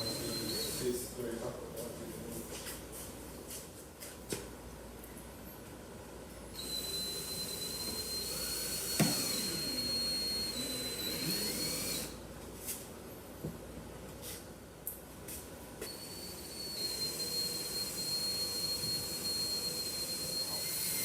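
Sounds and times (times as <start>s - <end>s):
power tool whining: 0.0s - 1.0s, 6.6s - 12.2s, 15.9s - 21.0s.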